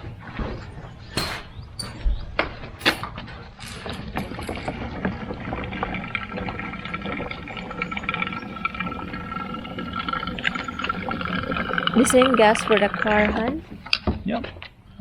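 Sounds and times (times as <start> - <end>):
fuel pouring into tank: 3.2 - 14.0.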